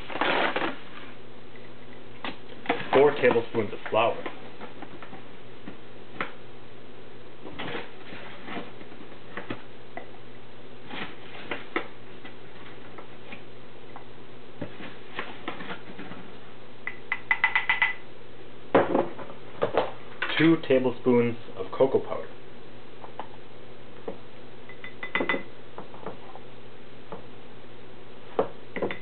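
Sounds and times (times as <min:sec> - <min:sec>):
spoon clinking against glass: 0:24.7 - 0:25.5.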